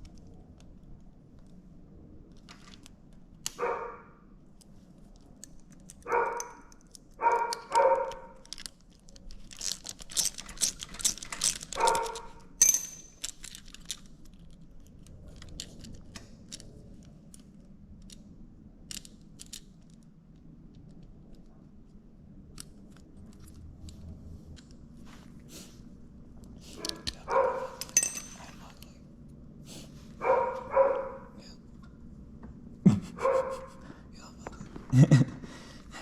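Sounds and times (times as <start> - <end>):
dog barking: 3.6 - 4.1, 6.1 - 6.6, 7.2 - 8.4, 11.8 - 12.4, 26.8 - 27.8, 30.2 - 31.4, 33.2 - 33.8
clicks and rattles of metal parts: 4.6 - 20.1, 26.8 - 28.9.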